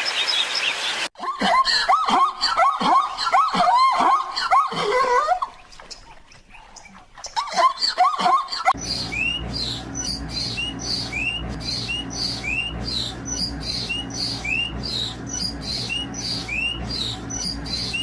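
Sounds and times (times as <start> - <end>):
bird chirping: 8.8 - 18.0
low hum: 8.8 - 18.0.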